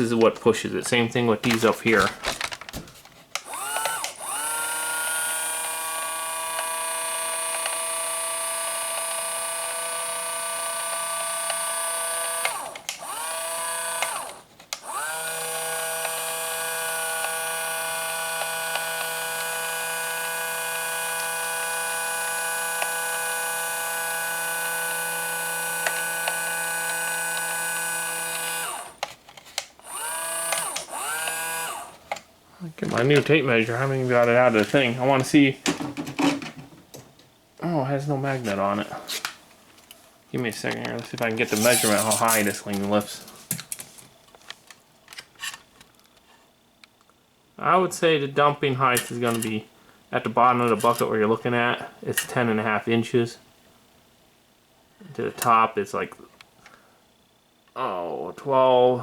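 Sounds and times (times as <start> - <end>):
small electric motors whining: 3.4 - 29.1, 29.8 - 32.0, 41.4 - 42.6.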